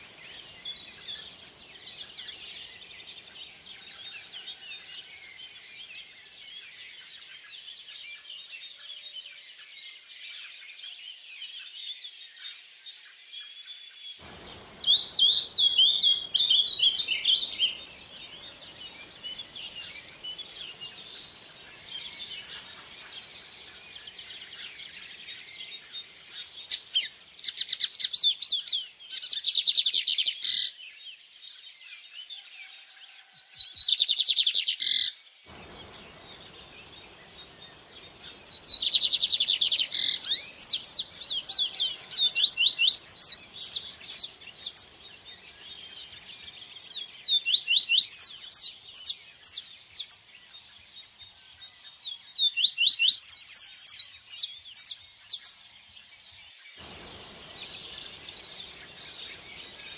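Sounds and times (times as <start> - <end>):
faint stream water rushing: 0.0 - 6.9, 14.2 - 28.0, 35.5 - 50.2, 56.8 - 59.9
songbirds chirping and trilling: 0.0 - 59.9.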